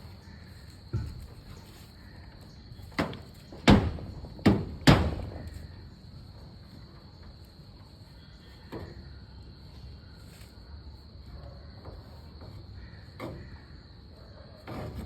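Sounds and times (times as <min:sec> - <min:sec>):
cricket trilling: 0:00.0 - 0:15.0
dull thud: 0:03.0 - 0:05.5.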